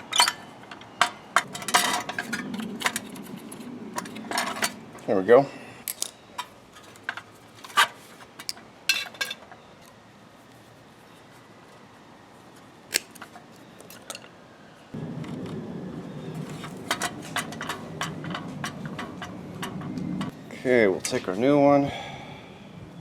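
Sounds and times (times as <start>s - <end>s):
steady low hum: 15.0s - 20.7s.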